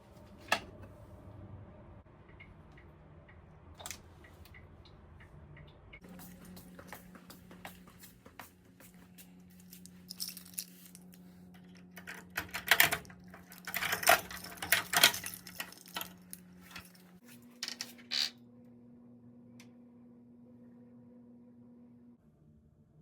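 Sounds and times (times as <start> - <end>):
steady low hum: 0.0 - 23.0
small objects clicking and rattling: 9.7 - 11.1, 13.3 - 16.9.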